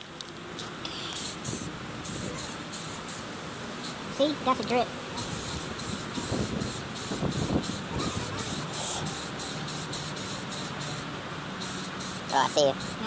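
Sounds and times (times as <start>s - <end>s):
spray can hissing in bursts: 1.1s - 4.2s, 5.1s - 13.0s
wind rumbling on microphone: 1.2s - 2.6s, 5.2s - 9.3s.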